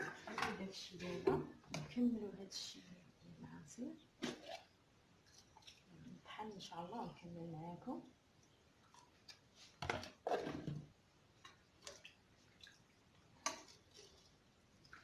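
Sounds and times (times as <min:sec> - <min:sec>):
kitchen utensils clattering: 0:00.0 - 0:00.6.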